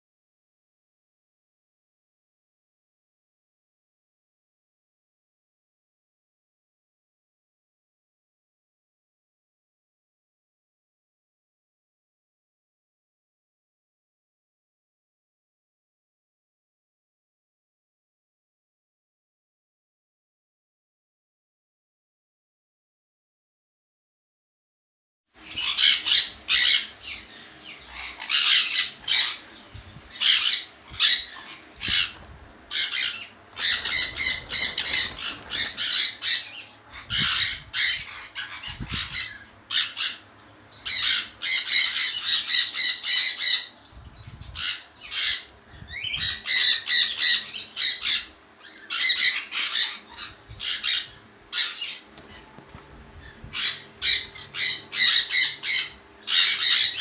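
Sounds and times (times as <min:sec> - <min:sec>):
parrots squawking and screeching: 0:25.4 - 0:57.0.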